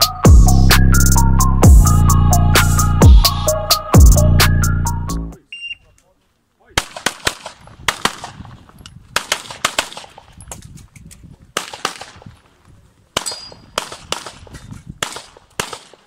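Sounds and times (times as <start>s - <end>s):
handgun shots: 6.8s - 8.4s, 9.2s - 10.2s, 13.2s - 16.0s.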